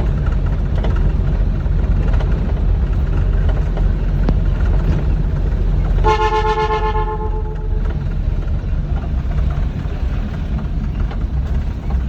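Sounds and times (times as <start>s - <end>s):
harvester engine rumble: 0.0s - 12.0s
vehicle horn toot: 6.0s - 7.9s.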